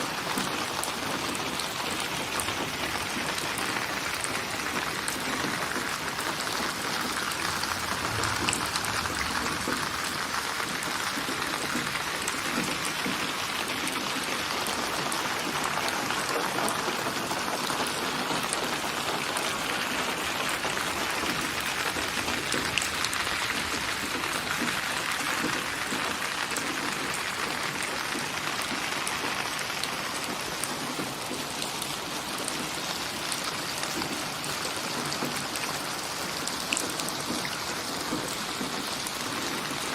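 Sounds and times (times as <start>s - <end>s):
steady rain: 0.0s - 39.9s
rain drop ticks: 4.9s - 14.0s.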